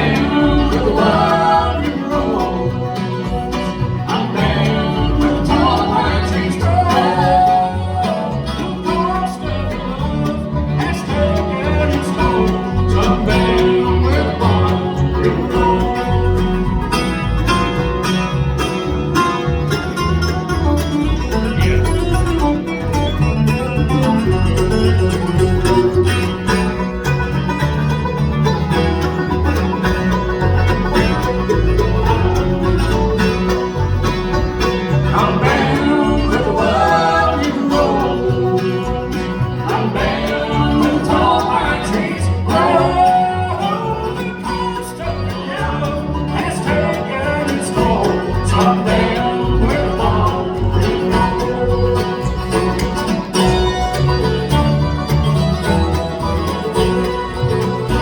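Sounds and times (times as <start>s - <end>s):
bluegrass band playing: 0.0s - 58.0s
fiddle melody: 0.0s - 58.0s.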